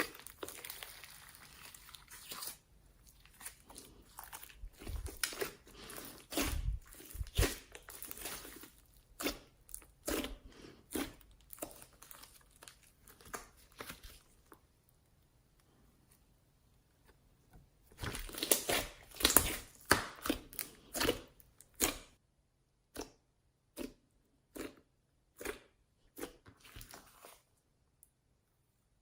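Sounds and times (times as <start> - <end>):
slime crackling: 0.0 - 14.5, 18.0 - 22.1
slime squishing: 0.0 - 15.0, 17.9 - 22.2, 22.9 - 27.6.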